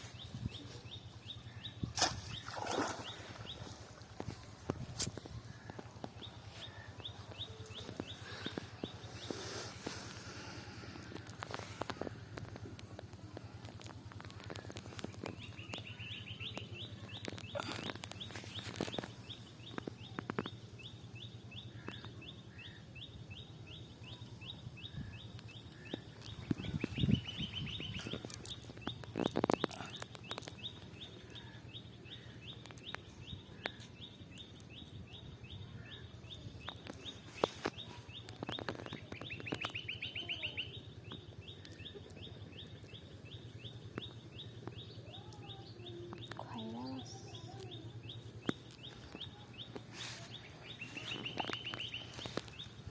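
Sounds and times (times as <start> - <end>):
knocks and splashes: 1.9 - 4.2.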